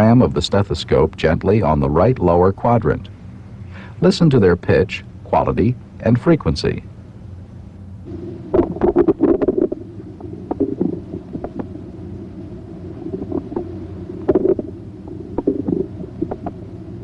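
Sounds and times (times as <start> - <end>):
bowel clicks and gurgles: 8.5 - 11.7, 13.1 - 16.6.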